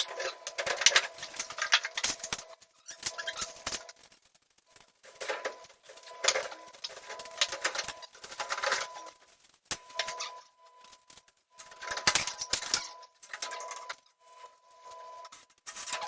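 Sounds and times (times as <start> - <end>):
rapid clicking and clattering: 0.0 - 10.2
faint steady tone: 4.7 - 16.0.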